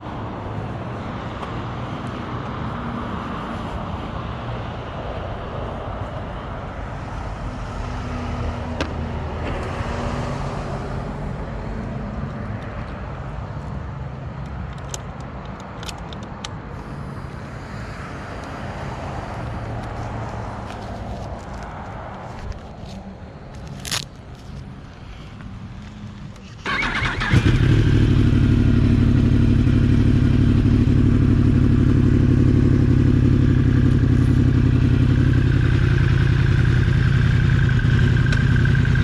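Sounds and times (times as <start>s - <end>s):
motorcycle engine running: 26.6s - 39.0s.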